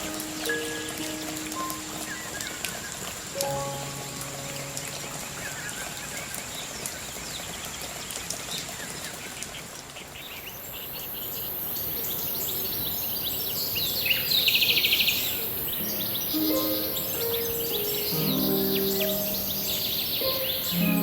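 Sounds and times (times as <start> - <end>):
high hiss: 0.0 - 6.4, 10.7 - 21.0
birds chirping: 0.0 - 21.0
steady hiss: 0.0 - 21.0.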